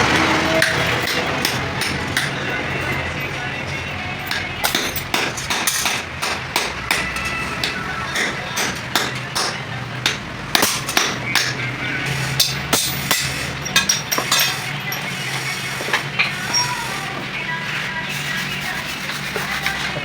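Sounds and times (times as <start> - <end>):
hammer tapping on metal: 0.1 - 2.5, 4.2 - 11.7.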